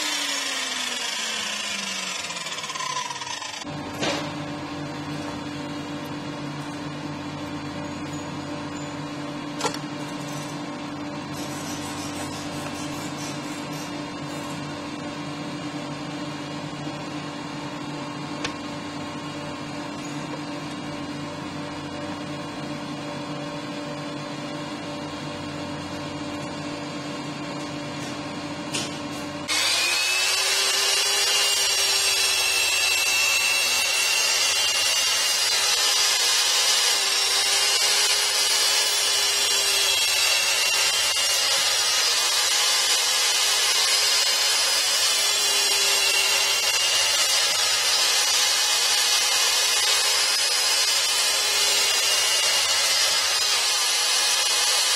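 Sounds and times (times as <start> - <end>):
saw motor high whine: 0.0 - 3.9, 29.4 - 54.9.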